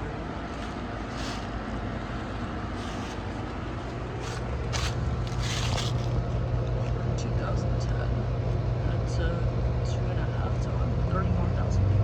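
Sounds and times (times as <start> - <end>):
compressor low hum: 0.0 - 12.0
condenser fan rushing: 0.0 - 12.0
short hissy bursts: 1.1 - 1.5.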